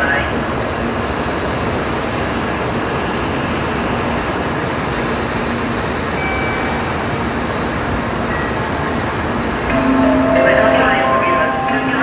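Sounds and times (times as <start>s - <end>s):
train and station machinery rush: 0.0s - 12.0s
faint high steady tone: 9.7s - 12.0s.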